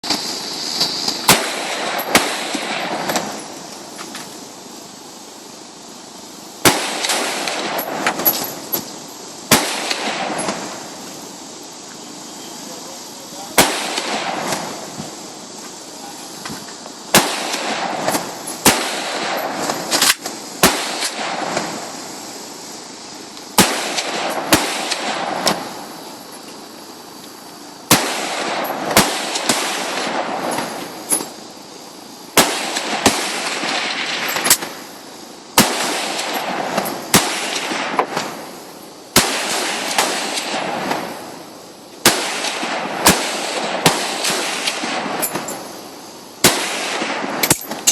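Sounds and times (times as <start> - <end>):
rifle shots with echo: 1.1 - 3.6, 6.6 - 8.8, 9.5 - 10.8, 13.5 - 14.9, 17.1 - 21.9, 23.6 - 25.8, 27.9 - 30.9, 32.4 - 34.8, 35.6 - 38.5, 39.1 - 41.2, 42.0 - 45.6, 46.4 - 47.9.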